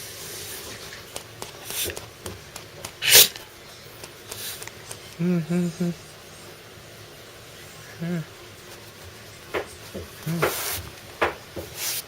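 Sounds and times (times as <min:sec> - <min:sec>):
dog sneezing: 0:03.0 - 0:03.4, 0:10.2 - 0:10.9, 0:11.8 - 0:12.0.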